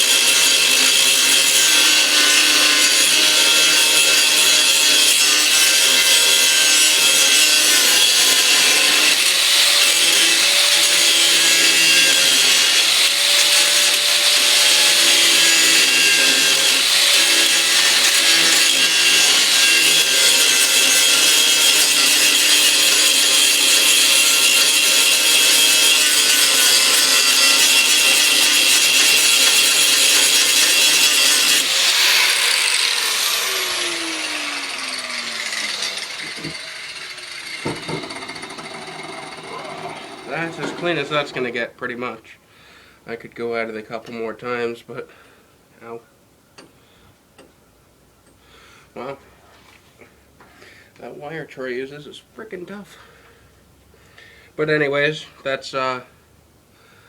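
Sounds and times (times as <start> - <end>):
power grinder on metal: 0.0 - 41.6.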